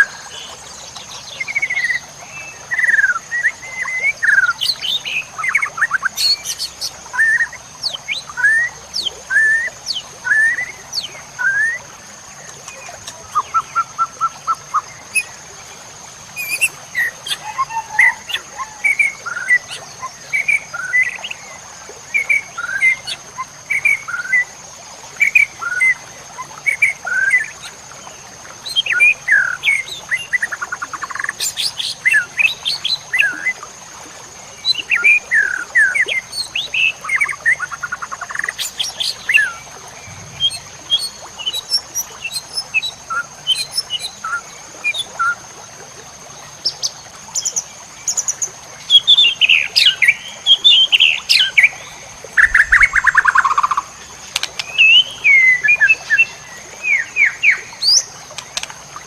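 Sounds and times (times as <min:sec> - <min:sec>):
songbird whistles and chirps: 0:01.4 - 0:11.9, 0:12.6 - 0:15.3, 0:16.4 - 0:21.4, 0:52.4 - 0:58.7.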